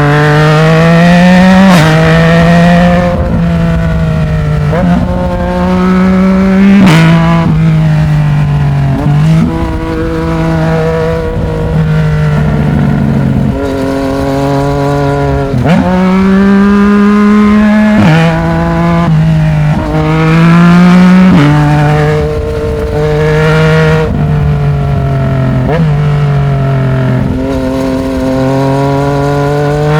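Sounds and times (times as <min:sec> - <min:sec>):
motorcycle engine revving: 0:00.0 - 0:29.9.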